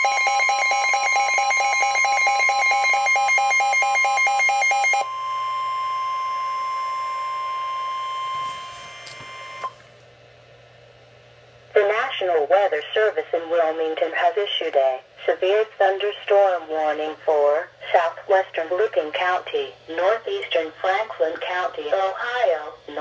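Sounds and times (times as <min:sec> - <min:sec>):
rapid pulsing beeps: 0:00.0 - 0:09.7
high alarm tone: 0:00.0 - 0:09.8.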